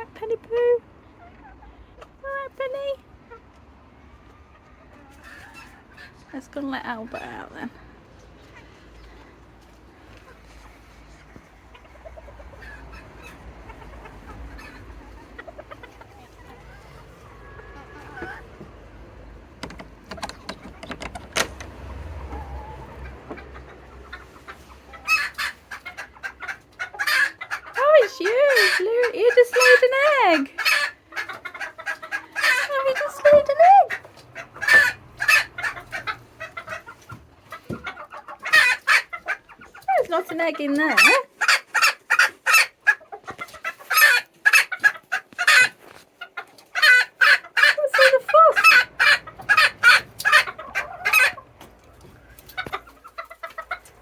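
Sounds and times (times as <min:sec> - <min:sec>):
chickens clucking: 0:00.0 - 0:54.0
sharp clicks and knocks: 0:19.5 - 0:21.9.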